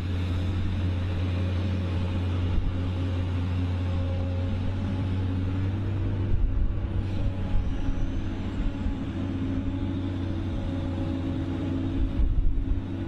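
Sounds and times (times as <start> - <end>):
large engine droning: 0.0 - 13.0.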